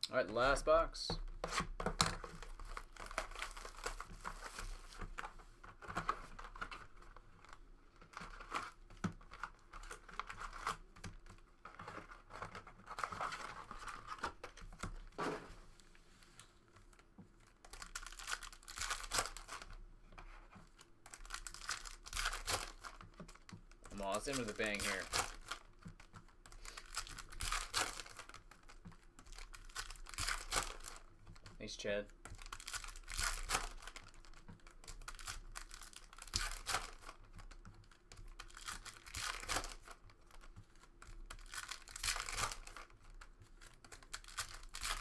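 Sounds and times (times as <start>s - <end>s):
card packs ripping and crinkling: 1.5s - 10.8s, 17.7s - 19.8s, 20.7s - 45.0s.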